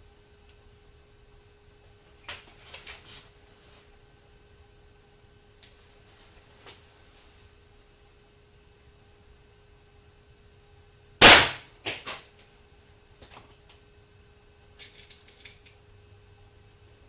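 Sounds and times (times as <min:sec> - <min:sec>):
air rifle shot: 0:11.2 - 0:12.0.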